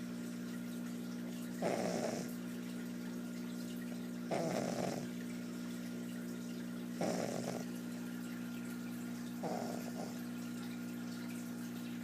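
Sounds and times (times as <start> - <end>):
puppy snoring: 1.6 - 2.4, 4.3 - 5.5, 6.9 - 7.8, 9.4 - 10.3.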